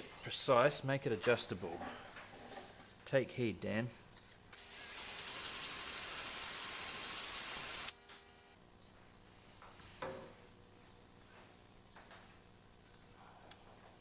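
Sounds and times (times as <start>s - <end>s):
spraying hiss: 4.6s - 8.0s.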